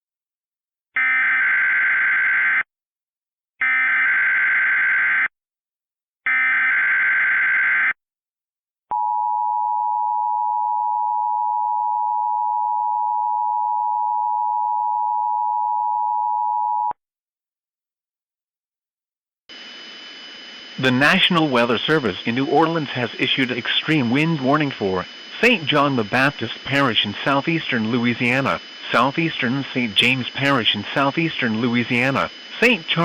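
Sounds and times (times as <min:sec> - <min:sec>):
warbling digital data bursts: 0:19.6 - 0:33.0.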